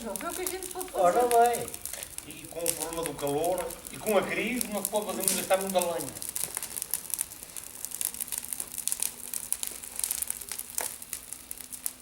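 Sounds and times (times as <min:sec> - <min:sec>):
wood bonfire crackling: 0:00.0 - 0:12.0.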